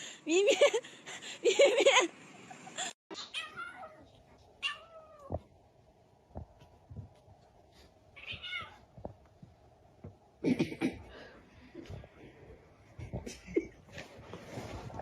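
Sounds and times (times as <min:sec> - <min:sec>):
cat meowing: 0:08.2 - 0:08.8.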